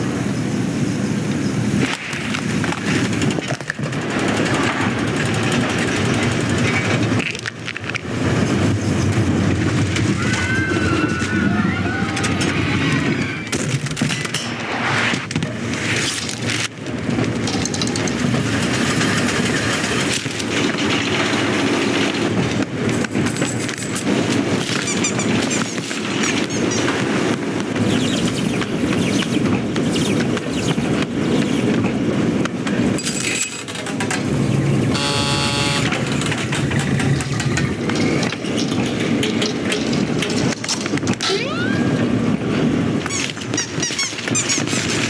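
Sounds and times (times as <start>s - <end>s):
conveyor machinery rattling: 0.1s - 14.6s, 15.4s - 45.0s
knocks and clatters: 13.5s - 41.3s
pitched screech: 41.2s - 42.1s.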